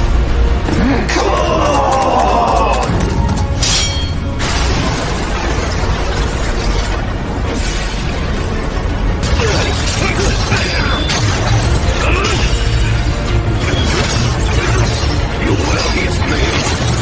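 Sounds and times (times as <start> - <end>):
cinematic soundtrack music: 0.0 - 17.0.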